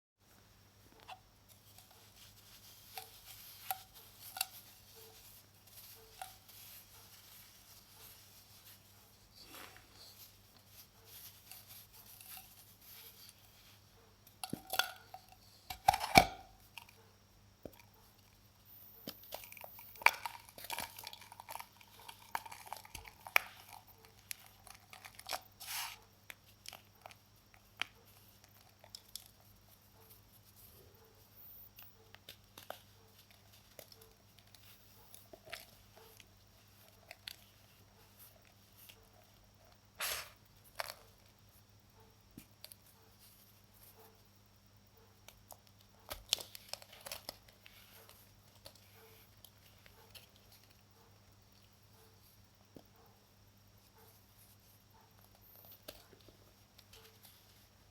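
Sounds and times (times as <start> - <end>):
baking soda crunching by hand: 19.2 - 29.5, 40.0 - 41.0.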